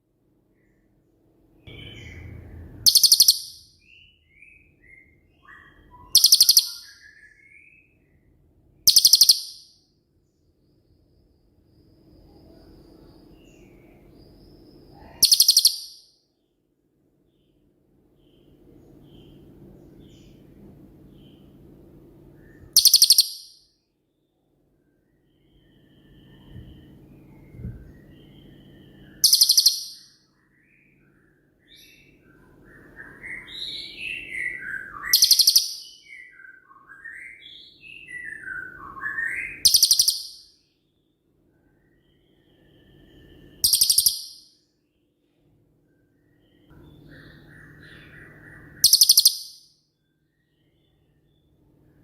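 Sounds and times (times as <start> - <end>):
bird gliding whistles: 1.7 - 7.9, 8.9 - 9.6, 25.2 - 31.1, 31.7 - 40.6, 41.6 - 44.7, 45.9 - 52.0.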